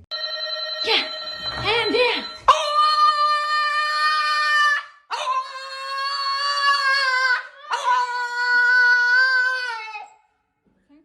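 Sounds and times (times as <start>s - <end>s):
long howling cries: 2.5s - 10.2s.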